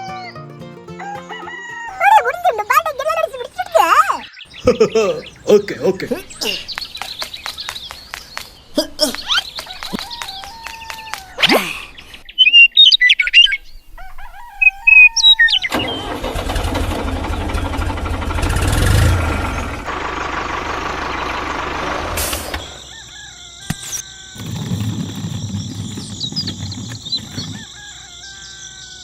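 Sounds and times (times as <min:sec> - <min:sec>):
bird chirps: 0:01.0 - 0:16.0, 0:22.6 - 0:29.0
small engine running: 0:15.7 - 0:22.9.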